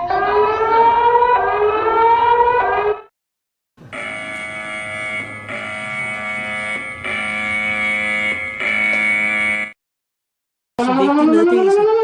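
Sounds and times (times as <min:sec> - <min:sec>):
emergency alert tone blasts: 0:03.8 - 0:09.8, 0:10.8 - 0:12.0.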